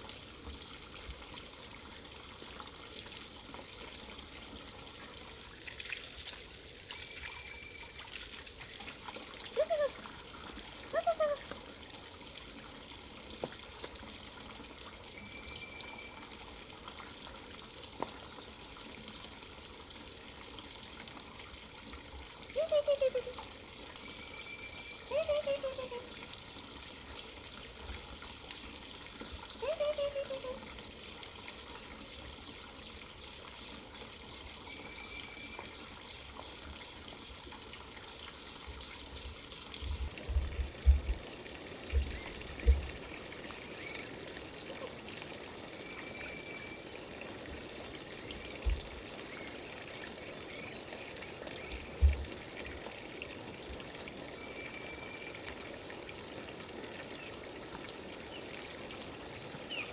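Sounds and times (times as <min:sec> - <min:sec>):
running water: 0:00.0 - 0:59.9.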